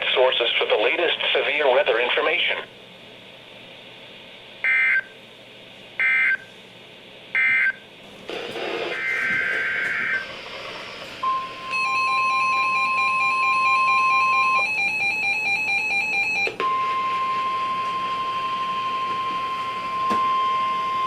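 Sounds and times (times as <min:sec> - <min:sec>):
steady high-pitched alarm tone: 0:08.6 - 0:21.0
high beeping tones: 0:11.2 - 0:16.8.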